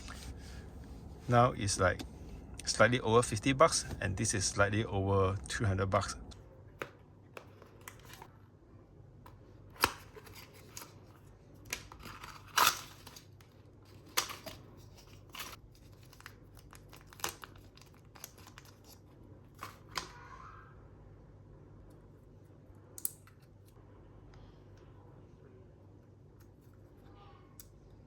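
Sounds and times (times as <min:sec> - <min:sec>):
packaging rustling: 0:09.8 - 0:20.0.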